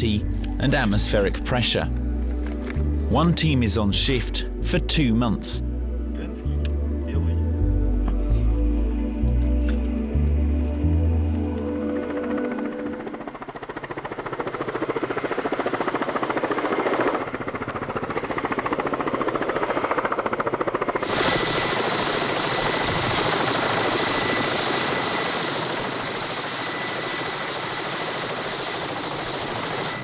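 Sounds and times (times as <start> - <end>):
helicopter rotor beating: 11.7 - 30.0
engine whine with hiss: 21.0 - 27.2.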